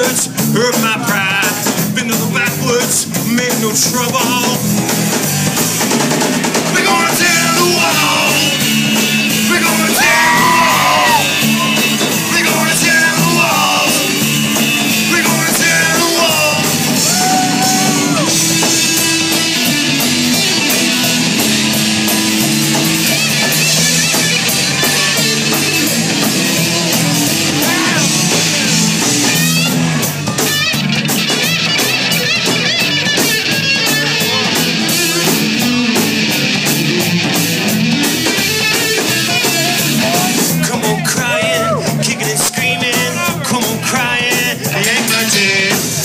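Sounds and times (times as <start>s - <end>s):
bass guitar: 0.0s - 46.0s
drum kit: 0.0s - 46.0s
electric guitar: 0.0s - 46.0s.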